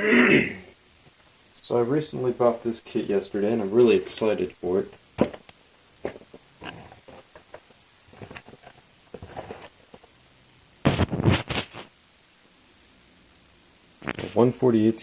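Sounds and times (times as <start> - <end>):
cardboard box scrapes and taps: 8.1 - 9.8, 10.9 - 11.9.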